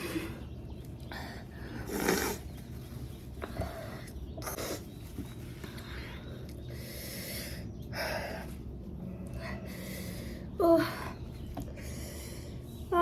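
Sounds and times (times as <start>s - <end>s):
person breathing hard and sniffing: 5.6s - 8.7s, 9.3s - 10.5s, 11.7s - 12.8s.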